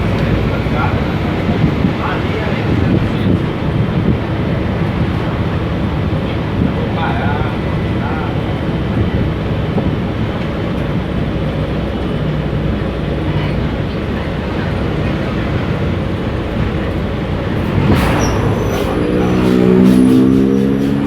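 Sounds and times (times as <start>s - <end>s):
bus engine running: 0.0s - 21.0s
road and body noise: 14.0s - 21.0s.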